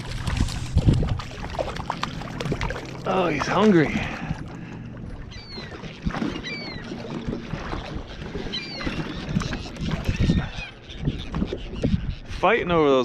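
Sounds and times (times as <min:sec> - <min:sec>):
water wash: 0:00.0 - 0:10.3
boat noise: 0:00.0 - 0:13.0
birds with falling cries: 0:04.6 - 0:12.3.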